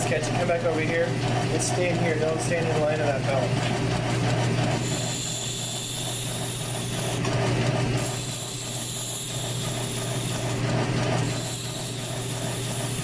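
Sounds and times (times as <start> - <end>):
lathe motor hum: 0.0 - 13.0
file hissing on spinning wheel: 4.7 - 7.3, 7.9 - 13.0.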